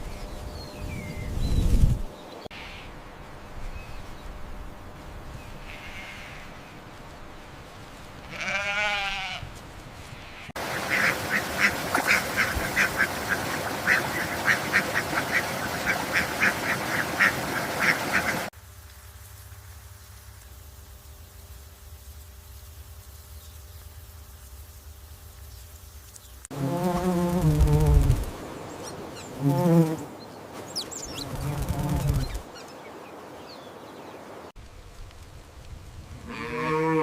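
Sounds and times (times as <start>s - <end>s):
faint outdoor ambience: 0.0s - 37.0s
wavering bleat: 5.6s - 6.5s, 8.2s - 9.5s, 36.2s - 37.0s.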